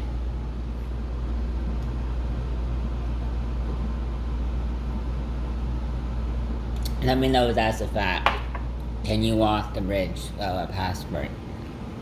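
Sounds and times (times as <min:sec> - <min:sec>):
low-pitched hum: 0:00.0 - 0:06.8.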